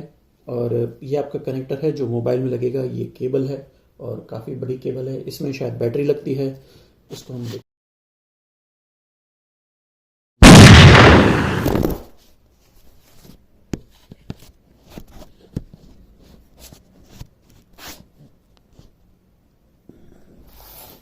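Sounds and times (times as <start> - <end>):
loud burst of rustling: 10.4 - 12.1.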